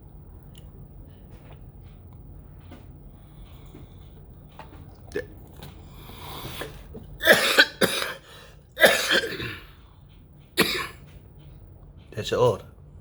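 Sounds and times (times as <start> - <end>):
person coughing: 6.4 - 9.7, 10.6 - 11.0.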